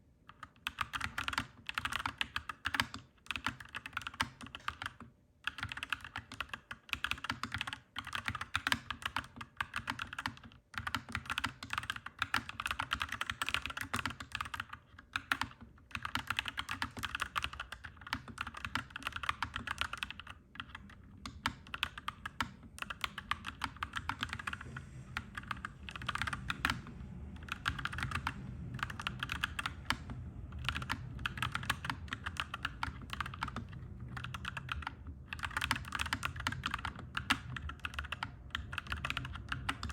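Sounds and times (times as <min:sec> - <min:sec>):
typing on mechanical keyboard: 0:00.3 - 0:39.9
low rumble: 0:20.8 - 0:36.0.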